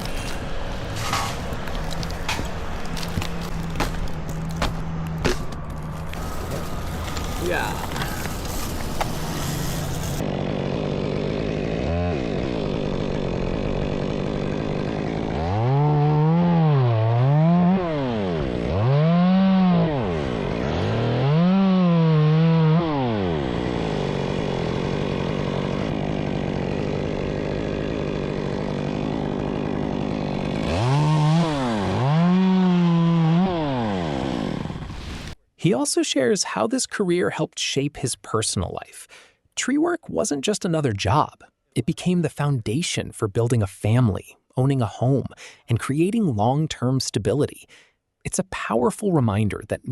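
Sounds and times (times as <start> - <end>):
chainsaw idling and revving: 0.0 - 5.0, 5.9 - 35.4.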